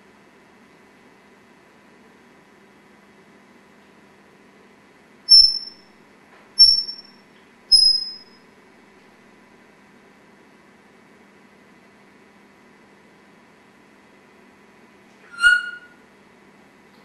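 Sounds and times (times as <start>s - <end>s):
parrot whistling high notes: 5.3s - 5.8s, 6.6s - 7.1s, 7.7s - 8.3s, 15.3s - 16.0s.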